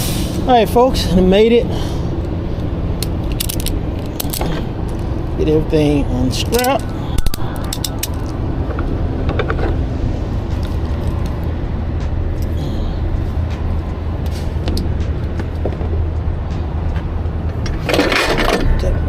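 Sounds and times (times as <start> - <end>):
vehicle engine humming: 0.0 - 19.0
strap buckles clicking: 3.0 - 5.0.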